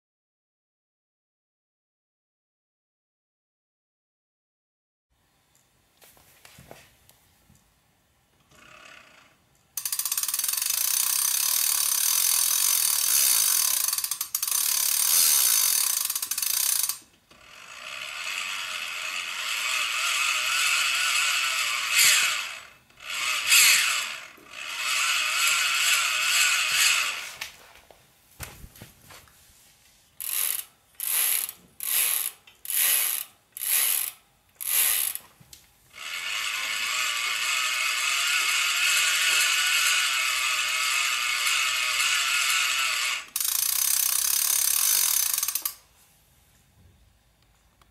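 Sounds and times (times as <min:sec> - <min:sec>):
bike crank freewheel ratchet ticking: 0:09.8 - 0:27.2, 0:30.2 - 0:35.2, 0:36.0 - 0:45.8.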